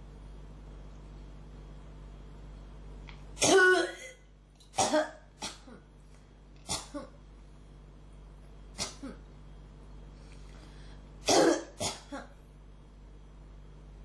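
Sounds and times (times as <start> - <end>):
person coughing: 3.4 - 4.2, 4.8 - 5.9, 6.6 - 7.2, 8.7 - 9.3, 11.2 - 12.4.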